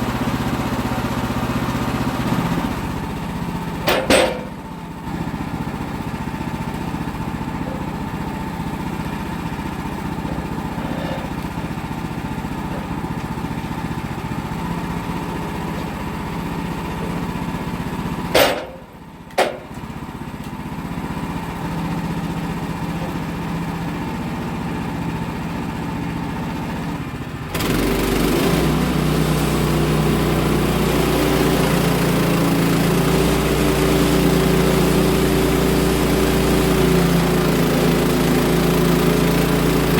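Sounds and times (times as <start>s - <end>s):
gas engine running: 0.0s - 39.9s
sharp knocks: 3.8s - 4.6s, 18.3s - 19.8s.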